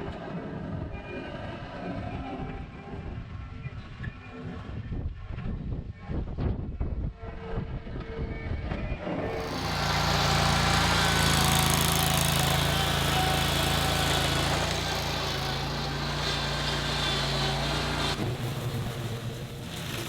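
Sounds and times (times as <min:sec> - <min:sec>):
diesel engine running: 0:09.3 - 0:20.0.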